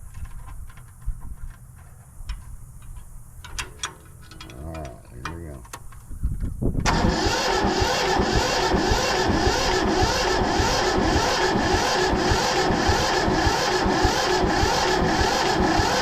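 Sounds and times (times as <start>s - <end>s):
starter motor cranking diesel engine: 3.5s - 5.7s, 6.8s - 16.0s.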